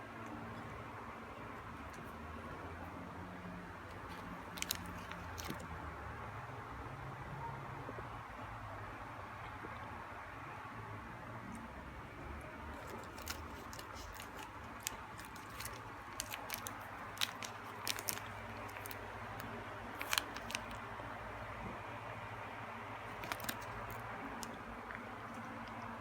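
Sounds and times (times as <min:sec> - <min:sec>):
snack packaging crackles: 0:03.9 - 0:05.7, 0:12.7 - 0:20.8, 0:23.1 - 0:25.9.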